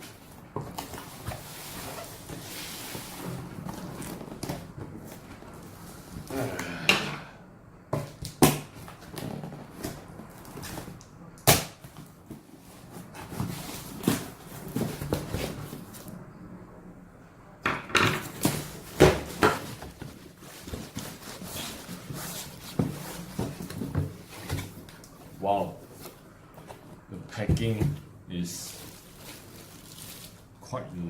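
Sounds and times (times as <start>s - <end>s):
plastic bag rustling: 0.0s - 6.3s, 12.1s - 16.2s, 18.2s - 27.0s, 28.4s - 30.7s
cardboard box knocks and scrapes: 11.9s - 16.0s, 18.3s - 24.8s.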